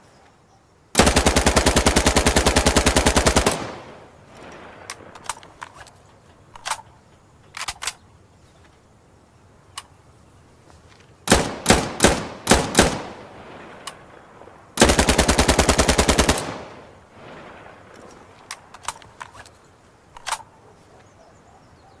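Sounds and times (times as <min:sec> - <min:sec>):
submachine gun firing bursts: 0:01.0 - 0:04.2, 0:11.3 - 0:13.4, 0:14.8 - 0:17.1
sharp clicks and cracks: 0:01.0 - 0:08.8, 0:09.6 - 0:10.0, 0:10.8 - 0:14.2, 0:14.8 - 0:17.1, 0:17.8 - 0:21.2.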